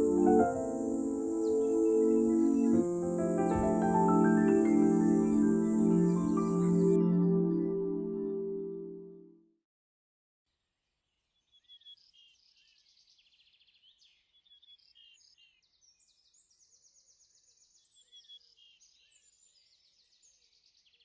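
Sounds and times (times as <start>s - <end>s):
insects trilling: 0.0s - 7.6s.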